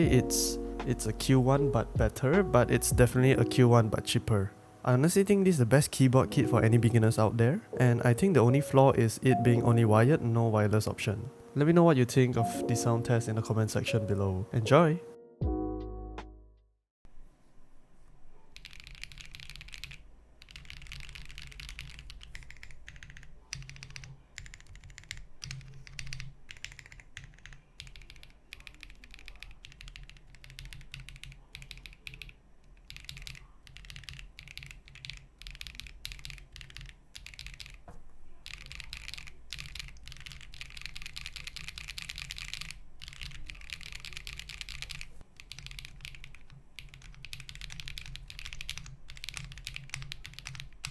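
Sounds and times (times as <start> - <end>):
mechanical keyboard typing: 18.5 - 50.9.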